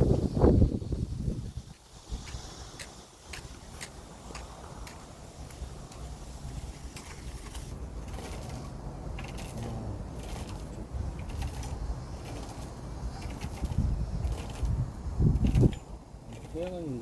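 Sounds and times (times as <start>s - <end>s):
wind rumbling on microphone: 0.0s - 17.0s
metallic jingling: 7.1s - 17.0s.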